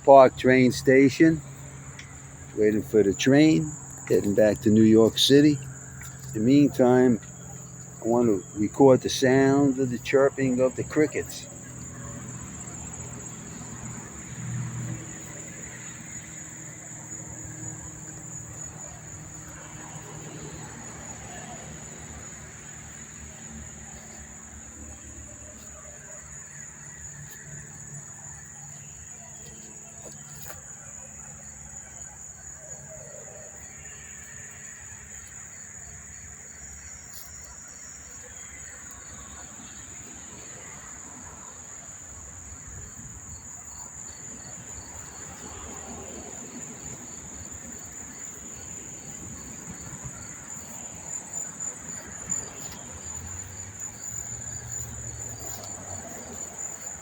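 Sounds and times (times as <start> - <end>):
crickets chirping: 0.0 - 57.0.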